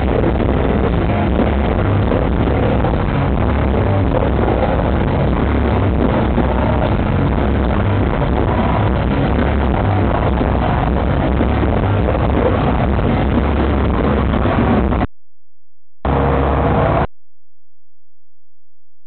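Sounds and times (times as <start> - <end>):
distorted metal song playback: 0.0 - 15.1, 16.0 - 17.1.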